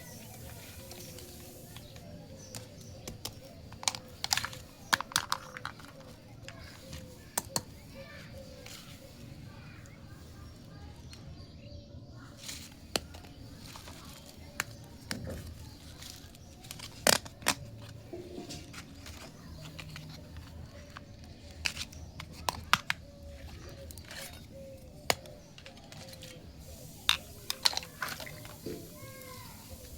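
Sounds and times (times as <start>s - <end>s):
soft rustling handling noise: 0.0s - 29.9s
plastic toy pieces clicking: 0.4s - 7.7s, 27.0s - 28.6s.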